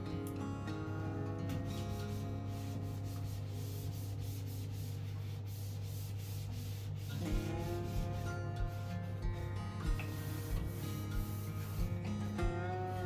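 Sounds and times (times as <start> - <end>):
soft background music: 0.0 - 13.0
scrubbing or sanding a surface: 1.9 - 8.8, 10.0 - 11.9.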